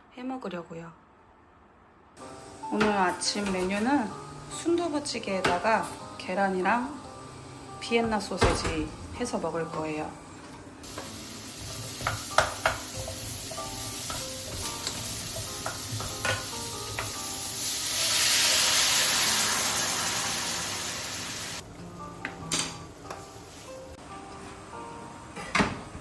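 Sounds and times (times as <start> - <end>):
food sizzling in a pan: 2.2 - 8.4, 10.8 - 21.6, 23.2 - 24.0.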